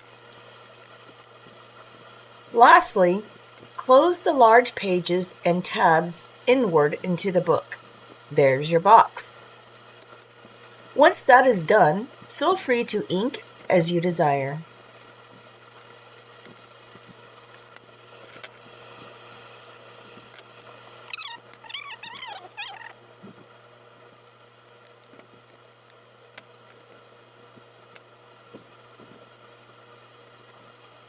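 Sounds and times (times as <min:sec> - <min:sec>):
low steady hum: 0:00.0 - 0:31.0
high squeaks: 0:21.1 - 0:23.0.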